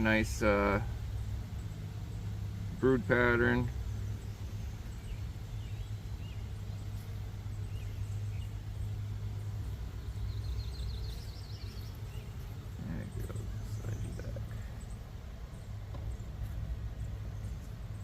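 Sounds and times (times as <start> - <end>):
low outdoor rumble: 0.0 - 18.0
bird chirps: 7.5 - 9.0, 10.1 - 16.4.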